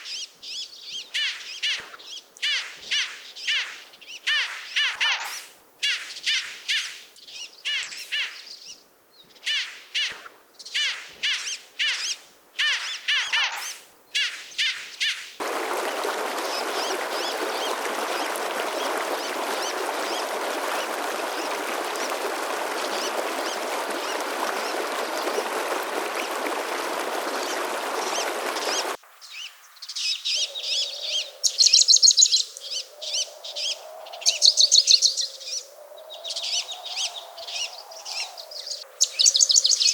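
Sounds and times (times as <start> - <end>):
small birds chirping: 0.0 - 39.9
rushing stream water: 15.4 - 29.0.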